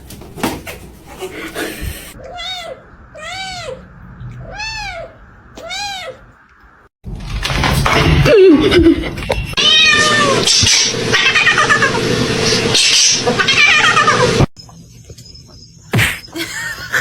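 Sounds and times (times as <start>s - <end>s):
kitten meowing: 2.2s - 3.8s, 4.4s - 6.2s, 9.6s - 11.8s
cat crying: 2.2s - 6.3s, 9.6s - 12.0s, 13.2s - 14.5s.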